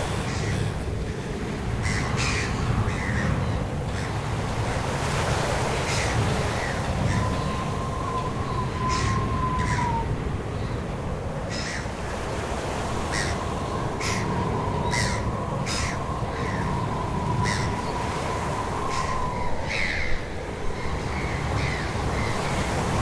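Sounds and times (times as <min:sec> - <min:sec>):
birds giving harsh calls: 0:00.0 - 0:23.0
wind and surf: 0:00.0 - 0:23.0
thin whistling tone: 0:07.1 - 0:10.2.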